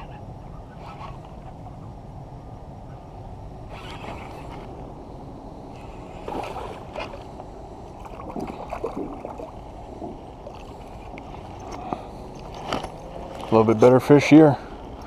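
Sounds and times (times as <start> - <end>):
steady low water rush: 0.0 - 15.0
fish thrashing in water: 7.9 - 10.8.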